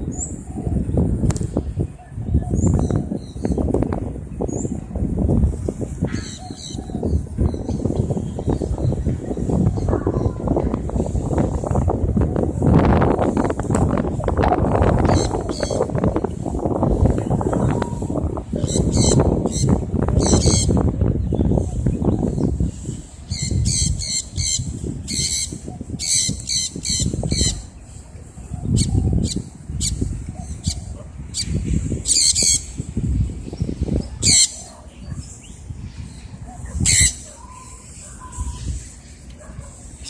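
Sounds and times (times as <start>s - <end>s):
low rumbling noise: 0.0s - 34.3s
parrots screeching: 34.2s - 34.7s, 36.8s - 38.6s.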